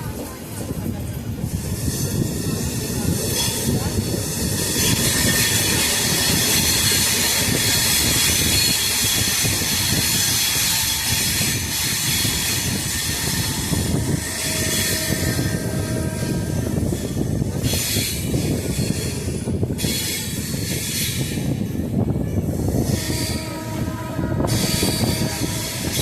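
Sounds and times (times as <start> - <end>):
train wheels grinding on rails: 0.0 - 26.0.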